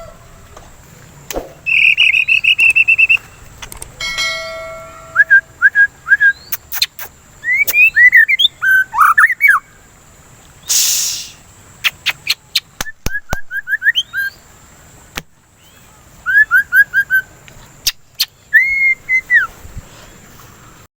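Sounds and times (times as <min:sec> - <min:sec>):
bird singing whistled notes: 0:01.6 - 0:03.5, 0:04.8 - 0:09.8, 0:10.6 - 0:14.5, 0:15.6 - 0:19.6
brief hiss: 0:10.6 - 0:11.5.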